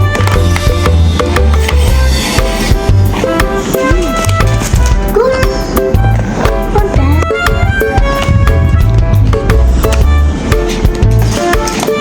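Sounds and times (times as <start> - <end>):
upbeat music with steady beat: 0.0 - 12.0.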